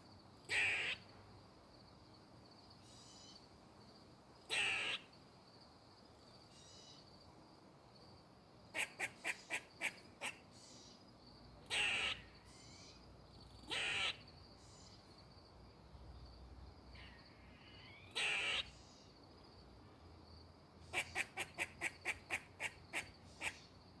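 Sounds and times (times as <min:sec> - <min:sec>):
squirrel alarm barks: 0:00.5 - 0:01.0, 0:04.5 - 0:05.0, 0:08.8 - 0:10.4, 0:11.7 - 0:12.3, 0:13.7 - 0:14.2, 0:17.9 - 0:18.8, 0:20.9 - 0:23.7.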